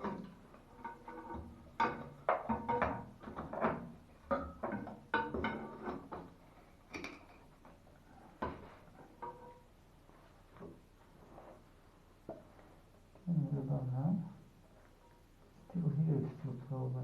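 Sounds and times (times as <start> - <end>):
metallic clanks and knocks: 0.0 - 9.7.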